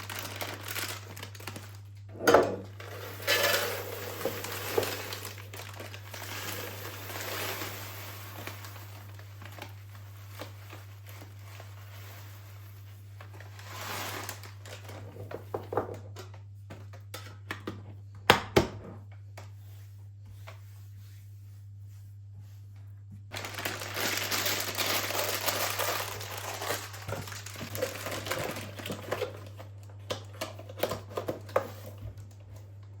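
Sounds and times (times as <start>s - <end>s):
soft rustling and crinkling: 4.2s - 15.7s, 19.4s - 30.0s.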